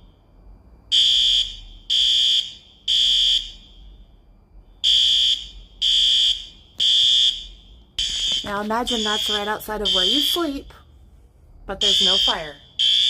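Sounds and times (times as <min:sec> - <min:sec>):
high-pitched fire alarm beeps: 0:00.9 - 0:03.9, 0:04.8 - 0:10.8, 0:11.8 - 0:13.0.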